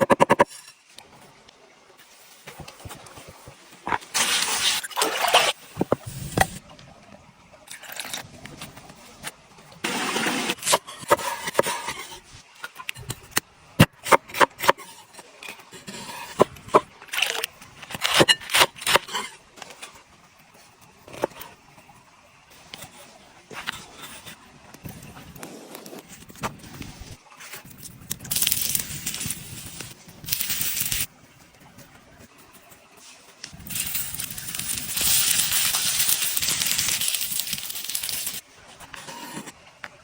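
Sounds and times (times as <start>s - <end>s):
rustling or scraping: 25.0s - 31.1s, 31.7s - 39.6s.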